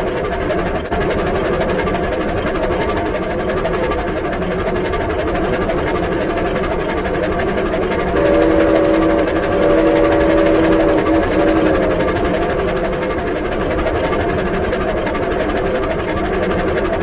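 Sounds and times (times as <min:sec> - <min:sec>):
cartoon steam locomotive chugging: 0:00.0 - 0:17.0
chime-like steam whistle: 0:08.0 - 0:13.2.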